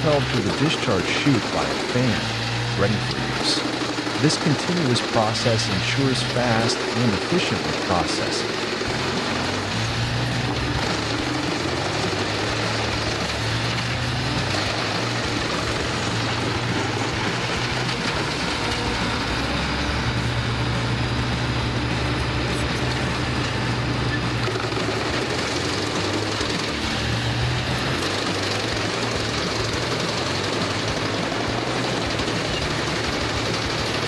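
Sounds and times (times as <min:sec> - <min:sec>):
wood chipper running: 0:00.0 - 0:34.0.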